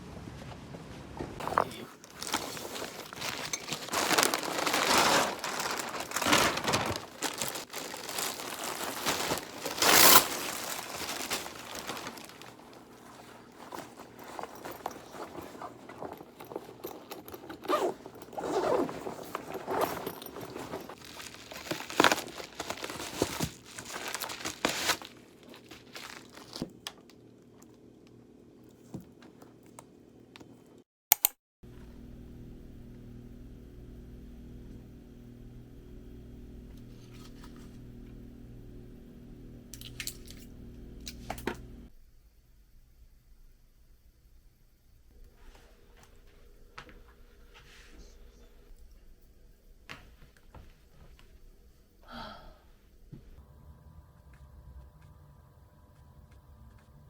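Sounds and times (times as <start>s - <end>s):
rustling and crinkling handling: 0.1s - 29.9s.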